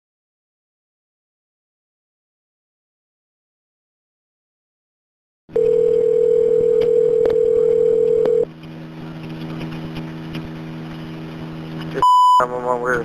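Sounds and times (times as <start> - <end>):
telephone line tone: 5.5 - 8.5, 12.0 - 12.5
quiet hum on line: 5.5 - 13.0
clicks on phone line: 5.6 - 8.4.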